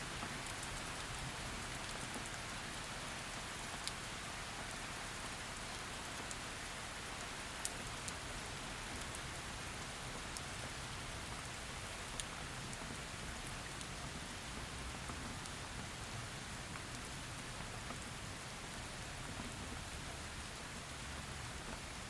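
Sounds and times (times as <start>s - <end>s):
rain drop ticks: 3.7s - 4.0s, 12.1s - 13.8s, 16.7s - 17.1s.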